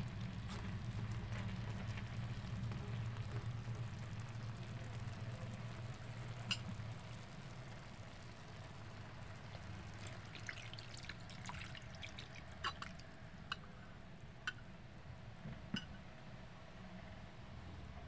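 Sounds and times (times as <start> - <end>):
liquid dripping and popping: 9.6 - 13.7.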